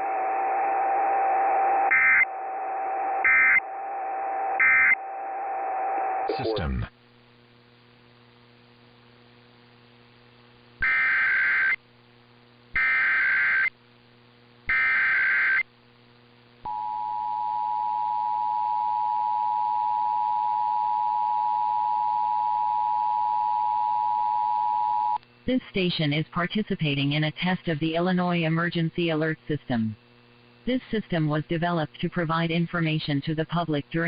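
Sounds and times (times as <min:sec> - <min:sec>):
faint steady hum: 0:00.0 - 0:34.0
screeching digital data tones: 0:01.6 - 0:05.4.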